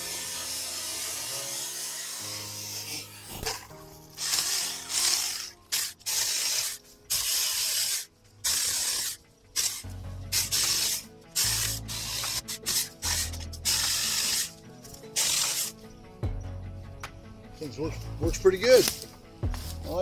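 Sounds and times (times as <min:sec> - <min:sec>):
electric chainsaw cutting branches: 0:00.0 - 0:15.9.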